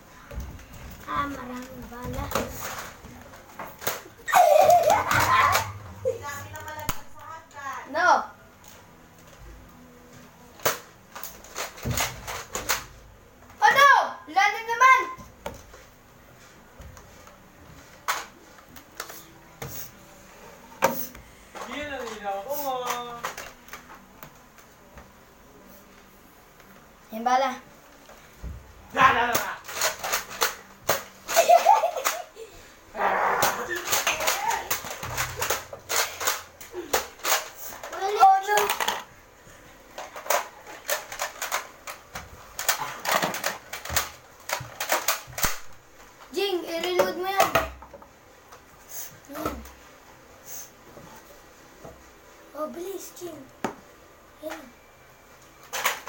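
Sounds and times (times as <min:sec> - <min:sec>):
toy blasters clicking and firing: 0:33.5 - 0:39.0.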